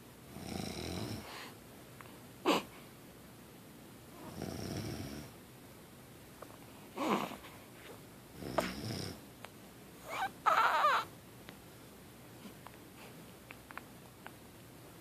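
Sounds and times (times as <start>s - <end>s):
man snoring: 0.4s - 1.3s, 4.3s - 5.3s, 8.4s - 9.2s.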